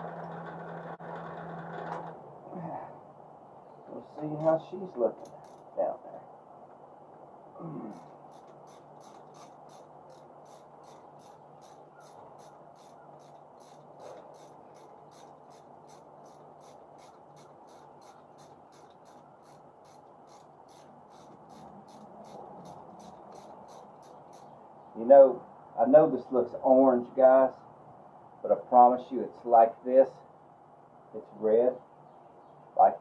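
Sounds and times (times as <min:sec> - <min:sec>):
faint low hum: 0:00.0 - 0:33.0
insect high-pitched pulses: 0:07.6 - 0:24.6.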